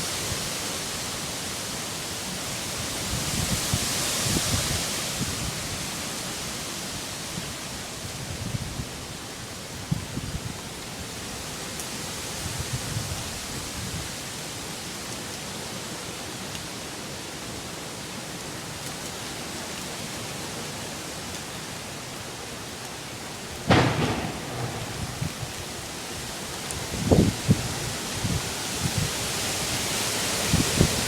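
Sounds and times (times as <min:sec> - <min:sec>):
hurricane-force wind rushing: 0:00.0 - 0:14.7, 0:23.0 - 0:31.0
loud bang: 0:23.7 - 0:25.4.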